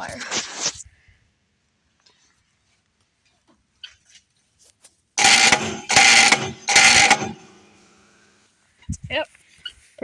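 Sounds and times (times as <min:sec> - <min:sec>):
electric buzzing zaps: 0:05.2 - 0:07.8.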